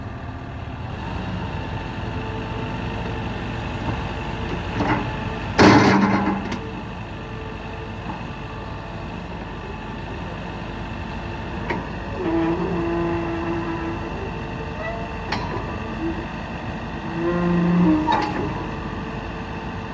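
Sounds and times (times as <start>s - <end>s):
excavator running: 0.0s - 19.9s.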